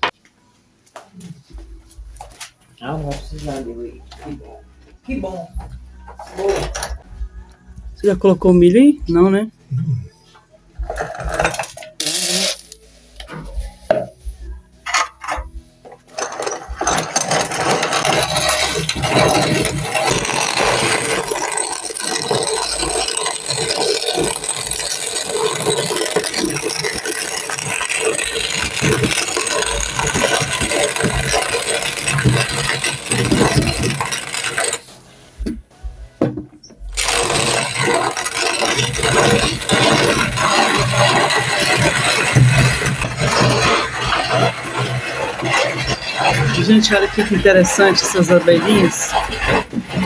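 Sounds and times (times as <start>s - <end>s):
grinding mill rattling: 14.8s - 35.5s, 36.8s - 50.0s.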